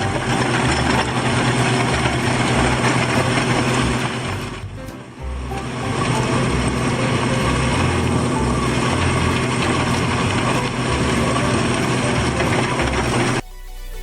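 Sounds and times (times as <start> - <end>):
excavator rumble and clatter: 0.0 - 13.4
electronic music: 10.1 - 14.0.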